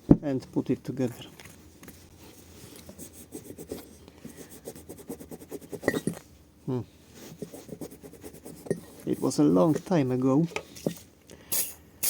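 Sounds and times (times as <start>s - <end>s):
rubbing and scratching metal part: 4.6s - 6.2s.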